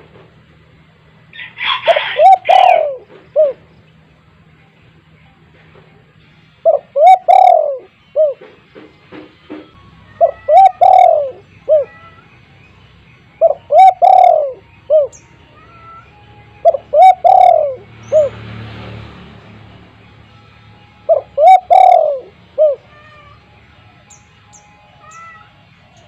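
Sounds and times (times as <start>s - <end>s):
dove cooing: 1.4s - 3.7s, 6.6s - 8.5s, 10.1s - 12.3s, 13.4s - 18.3s, 21.1s - 23.4s.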